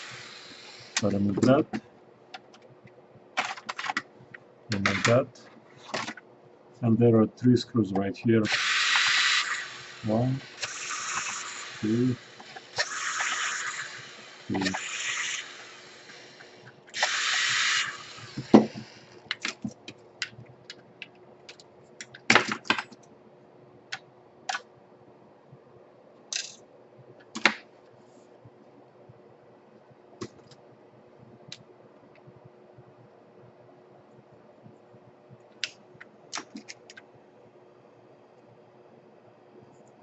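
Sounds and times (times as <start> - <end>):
short hiss: 8.4 - 19.2.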